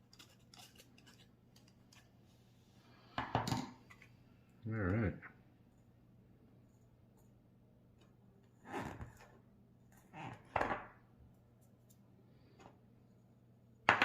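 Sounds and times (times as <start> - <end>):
scraping handling sounds: 0.0 - 2.4
faint steady hum: 0.0 - 14.0.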